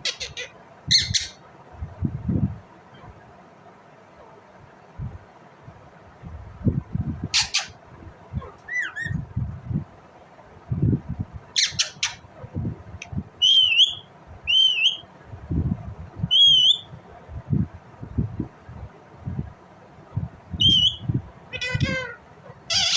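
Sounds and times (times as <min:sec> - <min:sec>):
parakeet screeching: 0:00.0 - 0:01.4, 0:07.3 - 0:07.8, 0:08.7 - 0:09.2, 0:11.6 - 0:12.2, 0:20.8 - 0:22.9
parakeet whistled calls: 0:00.0 - 0:01.4, 0:07.4 - 0:07.8, 0:08.7 - 0:09.2, 0:11.6 - 0:12.2, 0:13.4 - 0:15.1, 0:16.3 - 0:16.9, 0:20.6 - 0:22.9.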